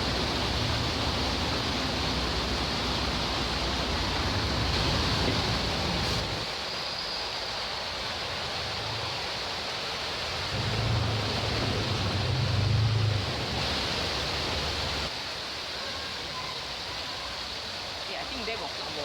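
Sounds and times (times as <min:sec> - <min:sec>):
heavy rain hissing: 0:00.0 - 0:19.0
running floodwater: 0:00.0 - 0:19.0
low bus engine drone: 0:10.6 - 0:14.0.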